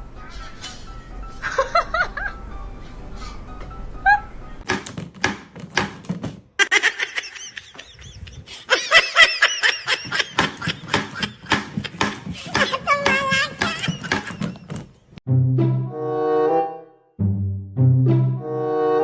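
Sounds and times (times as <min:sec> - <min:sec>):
high-pitched laughter: 0:06.6 - 0:14.7.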